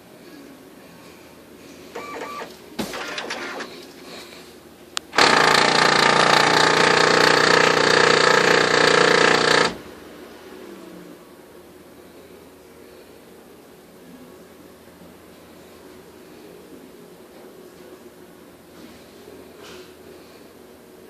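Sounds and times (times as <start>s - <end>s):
harsh printer grinding: 2.0s - 3.8s, 5.2s - 9.8s
printer whirs and clicks: 2.0s - 3.9s.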